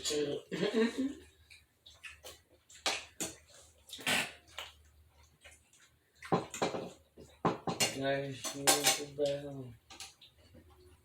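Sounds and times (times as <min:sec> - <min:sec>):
person chewing food: 0:00.8 - 0:07.4, 0:09.8 - 0:11.0.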